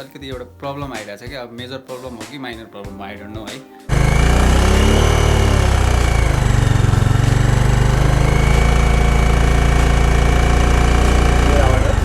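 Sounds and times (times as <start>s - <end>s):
motorcycle engine idling: 3.9s - 12.0s.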